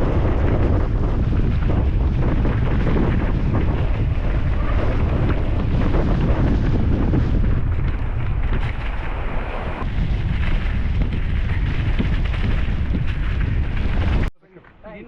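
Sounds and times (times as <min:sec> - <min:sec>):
strong wind buffeting microphone: 0:00.0 - 0:14.3
small rattles and clicks: 0:07.6 - 0:14.8.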